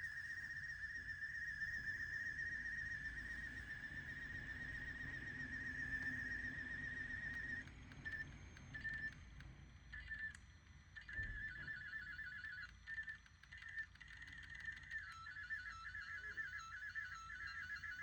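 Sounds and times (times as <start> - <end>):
cd player high warbling whine: 0.0 - 18.0.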